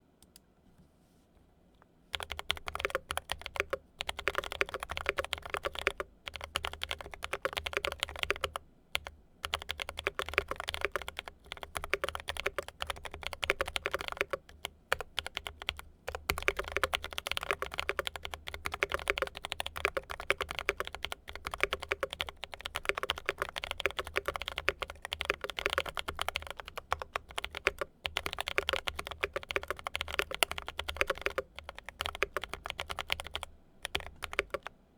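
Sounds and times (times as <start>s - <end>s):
fast mechanical keyboard typing: 2.2s - 34.7s.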